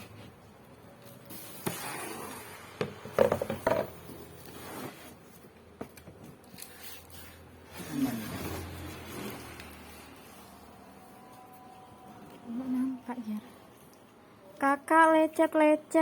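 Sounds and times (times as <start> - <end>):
plastic chair knocks and rattles: 2.8 - 4.0.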